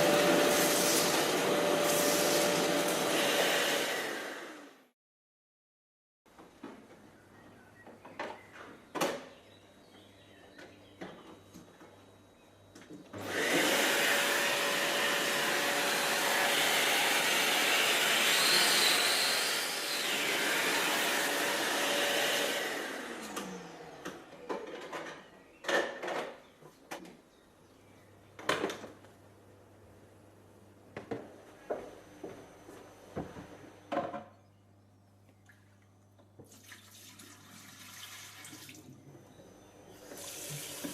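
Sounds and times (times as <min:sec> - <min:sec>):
vacuum cleaner whining: 0:00.0 - 0:04.9, 0:13.1 - 0:25.2, 0:31.1 - 0:34.0, 0:38.9 - 0:40.9.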